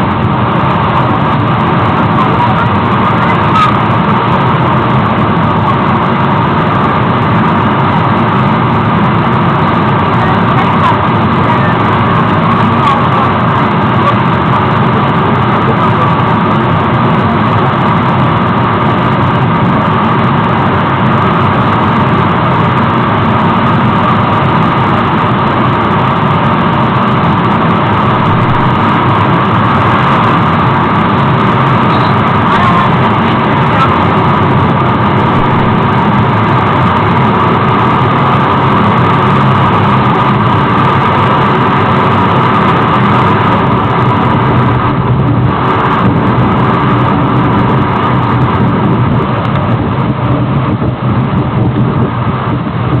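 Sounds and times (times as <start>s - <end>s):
waterfall rushing: 19.7s - 48.4s.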